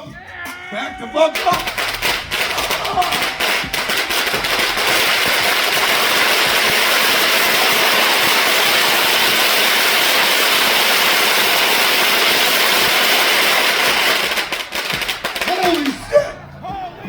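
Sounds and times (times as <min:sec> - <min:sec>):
fireworks crackling: 0:00.7 - 0:16.5.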